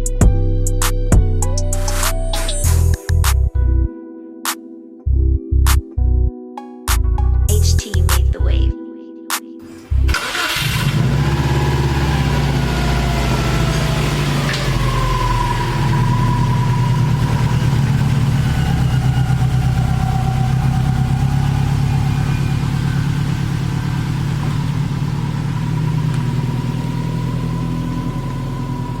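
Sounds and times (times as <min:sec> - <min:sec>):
car engine running: 0:09.7 - 0:29.0.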